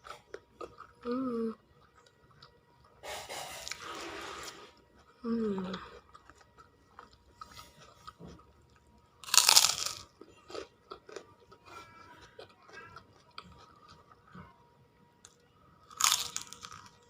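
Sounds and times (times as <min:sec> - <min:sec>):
chewing: 0:00.0 - 0:03.0, 0:04.5 - 0:14.6, 0:15.3 - 0:17.0
biting into crunchy food: 0:05.7 - 0:14.3, 0:15.3 - 0:17.0.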